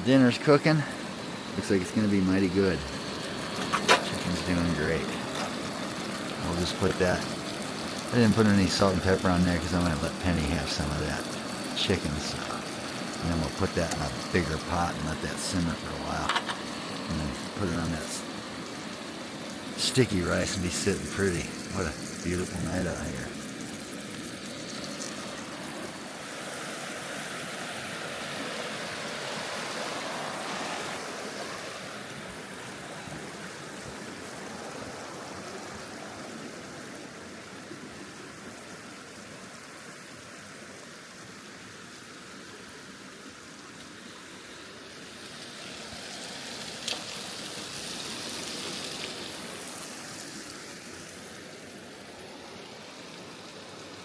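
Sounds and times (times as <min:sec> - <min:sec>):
river rushing over rocks: 0:23.0 - 0:54.0.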